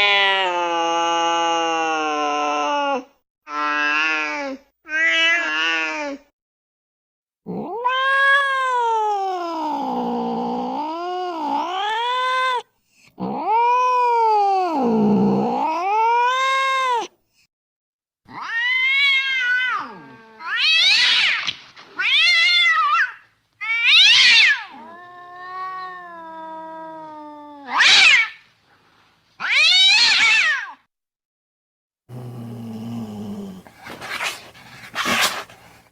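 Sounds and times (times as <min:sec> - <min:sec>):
cat meowing and yowling: 0:00.0 - 0:06.2, 0:07.5 - 0:10.0, 0:10.7 - 0:17.1, 0:18.3 - 0:28.4, 0:29.4 - 0:30.8.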